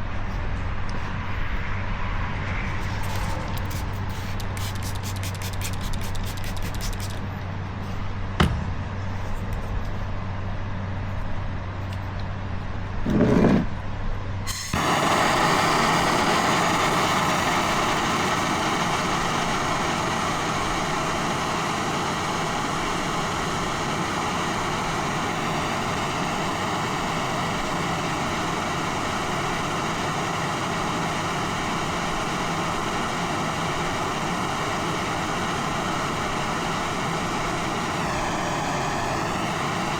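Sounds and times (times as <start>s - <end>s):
sharp click: 3.0s - 7.2s
gas torch hissing: 3.0s - 7.3s, 14.5s - 39.9s.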